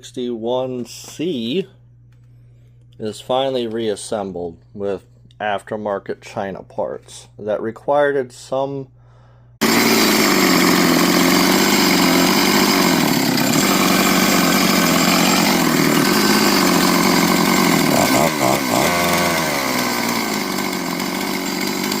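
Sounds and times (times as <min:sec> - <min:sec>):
chainsaw engine running: 0:09.6 - 0:22.0.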